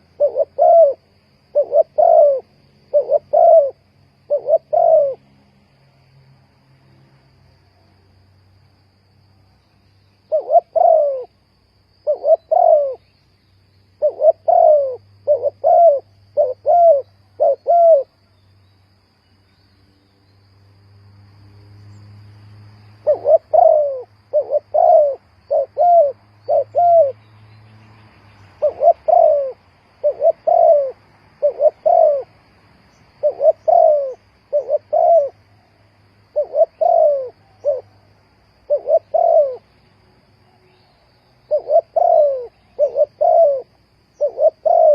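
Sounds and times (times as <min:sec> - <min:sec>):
dove cooing: 0:00.0 - 0:05.3, 0:10.3 - 0:11.4, 0:12.0 - 0:13.1, 0:14.0 - 0:18.2, 0:23.0 - 0:27.2, 0:28.6 - 0:32.4, 0:33.2 - 0:35.5, 0:36.3 - 0:39.7, 0:41.4 - 0:44.9.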